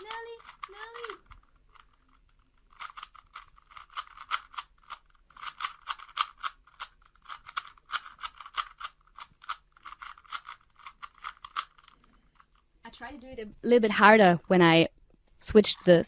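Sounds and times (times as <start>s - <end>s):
puzzle cube plastic clicks: 0.0s - 12.7s.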